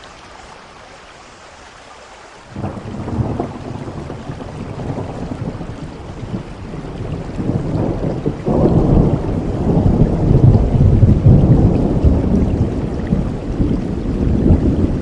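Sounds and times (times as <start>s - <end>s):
steady rain: 0.0s - 15.0s
rolling thunder rumble: 2.5s - 15.0s.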